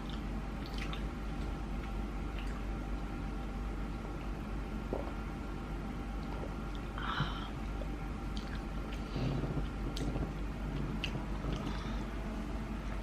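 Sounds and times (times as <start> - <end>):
soft chewing: 0.0 - 3.0, 7.6 - 12.2
steady low hum: 0.0 - 13.0.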